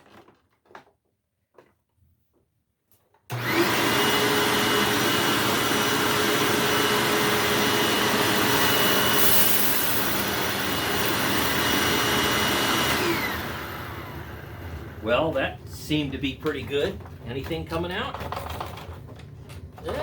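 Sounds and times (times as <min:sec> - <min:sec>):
vacuum cleaner running on carpet: 0:03.3 - 0:15.3.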